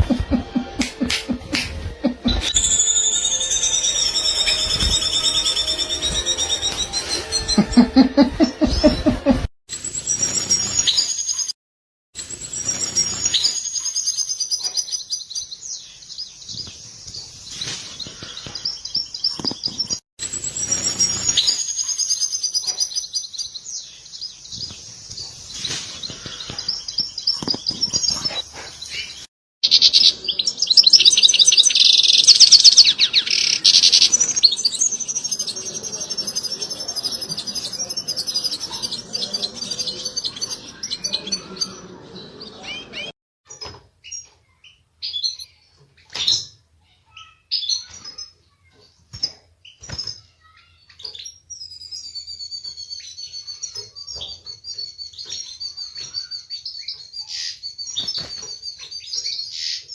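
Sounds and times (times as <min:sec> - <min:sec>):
goldfinch twittering: 0:29.7 - 0:43.1.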